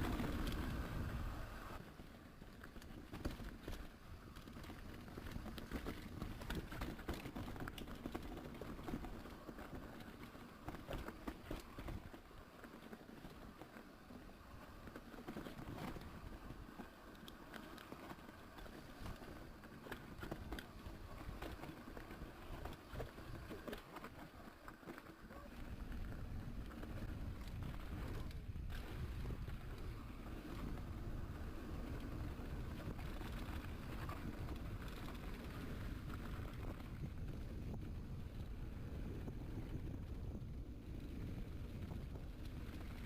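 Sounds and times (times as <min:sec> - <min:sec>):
bike rattling and clicking: 0:00.0 - 0:43.0
bike tyres on dirt and stones: 0:00.0 - 0:43.0.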